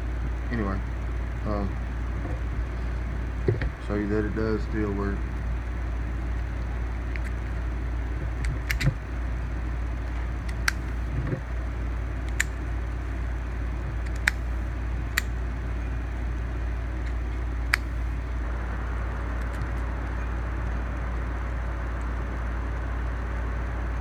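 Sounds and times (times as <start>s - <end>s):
steady low hum: 0.0s - 24.0s
padlock metallic clicks: 8.4s - 9.0s, 10.5s - 10.9s, 12.2s - 12.6s, 14.0s - 14.5s, 15.1s - 15.4s, 17.0s - 18.0s.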